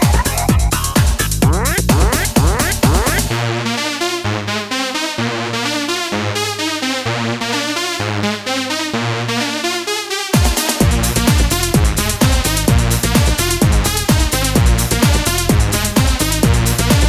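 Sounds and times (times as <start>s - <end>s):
dance drum beat: 0.0s - 3.3s, 10.4s - 17.0s
repeated bass notes: 0.0s - 3.4s, 10.8s - 17.0s
synthesizer keyboard riff: 0.0s - 10.8s.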